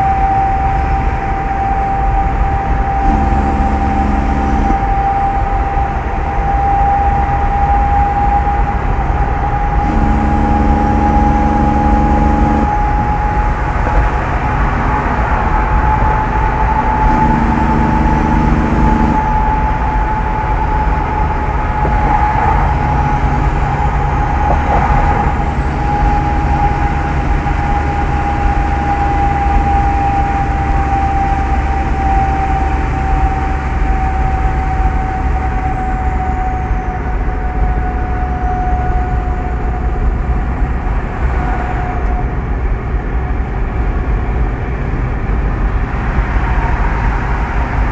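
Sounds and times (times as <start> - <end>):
turbo whistle: 0.0 - 13.8, 15.9 - 36.9
diesel truck rumbling: 0.0 - 47.9.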